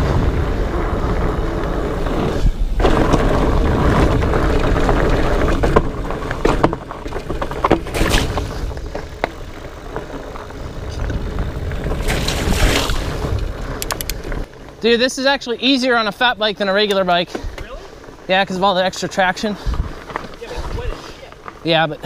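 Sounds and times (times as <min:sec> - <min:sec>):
wind rumbling on microphone: 0:00.0 - 0:14.5, 0:19.4 - 0:21.4
bike tyres rolling: 0:00.0 - 0:22.0
bike knocks and rattles: 0:01.1 - 0:14.5.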